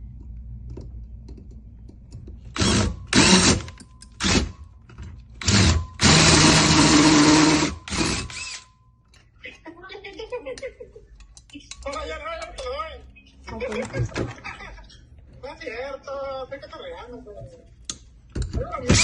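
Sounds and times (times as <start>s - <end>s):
power drill bursts: 2.6s - 4.6s, 5.4s - 8.7s.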